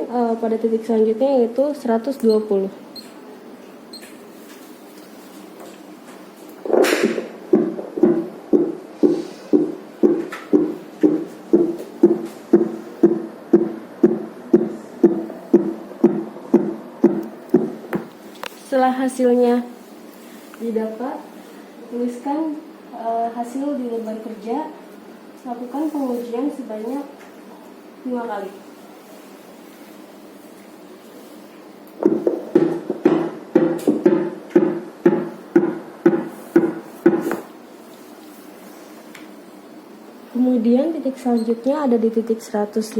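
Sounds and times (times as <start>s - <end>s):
simulated fetal heartbeat thumps: 6.6s - 18.1s, 32.0s - 37.5s.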